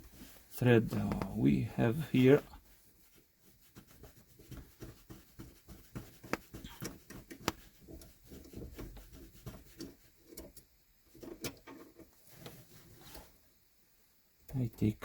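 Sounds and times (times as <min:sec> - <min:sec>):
hands clicking and tapping on linkage: 0:04.3 - 0:12.0.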